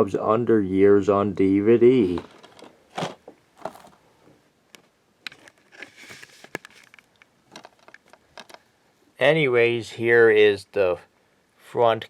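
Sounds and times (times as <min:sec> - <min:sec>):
plastic case clicks and rustling: 0:02.1 - 0:04.0, 0:05.2 - 0:08.6.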